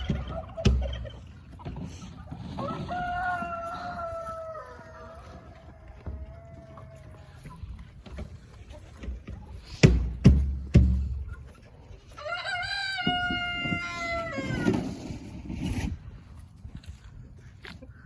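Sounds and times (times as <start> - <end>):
rooster crowing: 2.6 - 7.3, 12.2 - 14.7.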